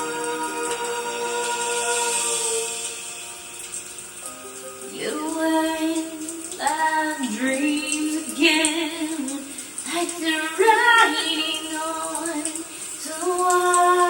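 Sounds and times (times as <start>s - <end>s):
woman singing in funny voices: 4.9s - 14.0s.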